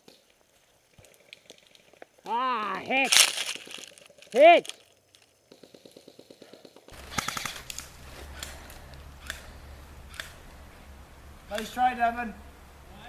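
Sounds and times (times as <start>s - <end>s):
background noise: 0.0s - 13.0s
airsoft gun full-auto rattle: 3.2s - 10.4s.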